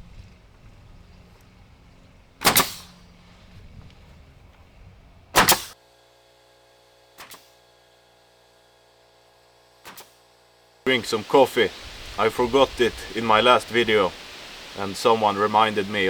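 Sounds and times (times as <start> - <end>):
pneumatic nail gun firing: 2.4 - 3.4, 5.3 - 5.8, 7.1 - 7.7, 9.8 - 10.3.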